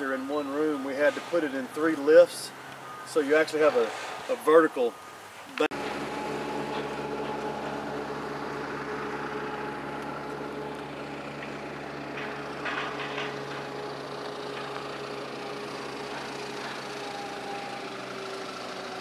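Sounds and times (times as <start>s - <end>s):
engine idling: 5.7s - 19.0s.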